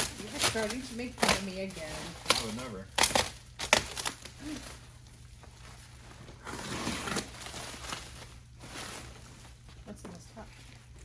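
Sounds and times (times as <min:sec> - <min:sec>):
cardboard rustling and scraping: 0:05.5 - 0:10.8.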